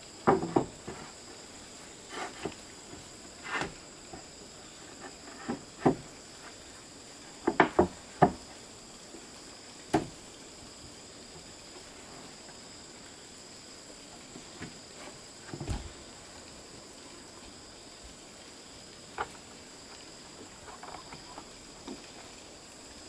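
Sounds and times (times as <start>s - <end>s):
insect drone: 0.0s - 23.0s
wooden boards knocking: 0.2s - 1.1s, 5.1s - 6.1s, 7.4s - 8.4s, 9.9s - 10.1s.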